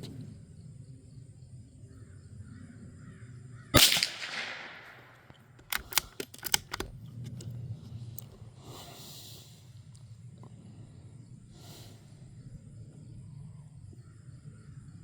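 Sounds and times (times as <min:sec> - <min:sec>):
rifle shot: 0:03.8 - 0:06.8
rifle bolt clicking: 0:03.8 - 0:07.5.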